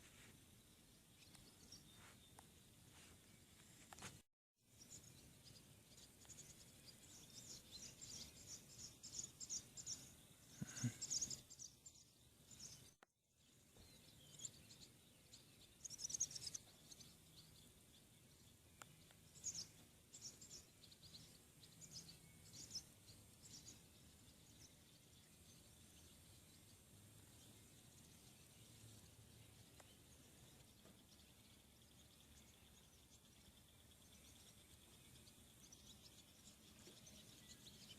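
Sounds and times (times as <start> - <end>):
small birds chirping: 0.0 - 37.9.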